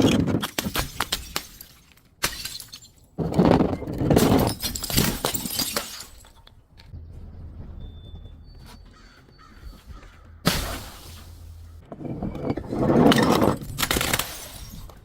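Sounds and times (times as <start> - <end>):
glass shattering: 0.4 - 3.2, 3.8 - 6.5, 12.4 - 15.0
clinking glass shards: 4.2 - 6.5.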